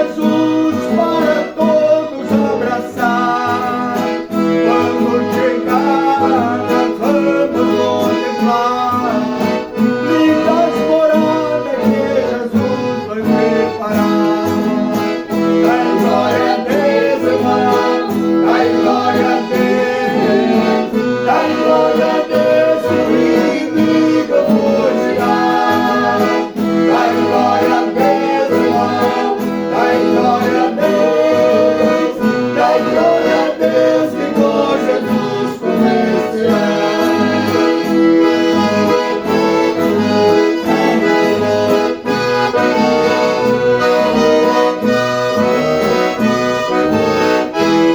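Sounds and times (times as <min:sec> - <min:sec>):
accordion playing hymn chords: 0:00.0 - 0:47.9
guitar strumming: 0:00.0 - 0:47.9.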